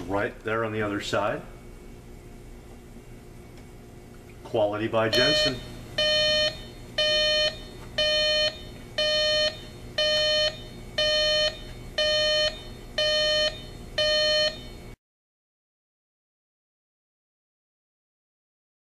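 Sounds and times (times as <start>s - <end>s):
alarm clock beeping: 5.1s - 14.8s.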